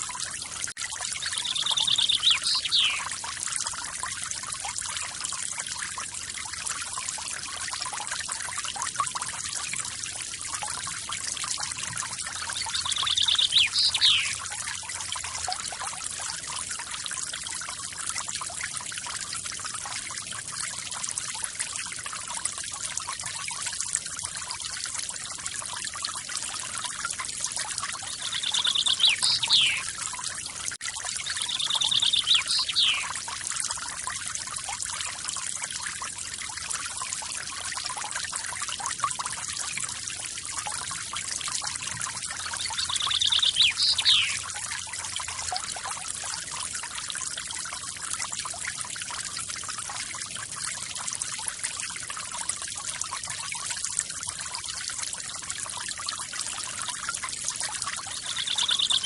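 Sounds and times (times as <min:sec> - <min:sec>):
songbird trilling: 0:01.2 - 0:03.0, 0:12.6 - 0:14.4, 0:28.1 - 0:29.9, 0:31.2 - 0:33.1, 0:42.6 - 0:44.4, 0:58.1 - 0:59.0.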